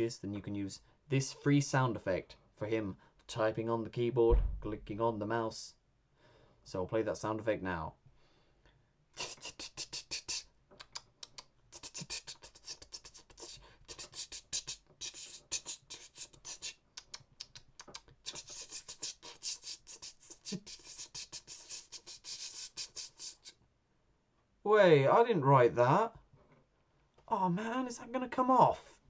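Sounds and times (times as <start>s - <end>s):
mouth-made keyboard clicks: 10.7s - 11.5s, 16.9s - 18.2s.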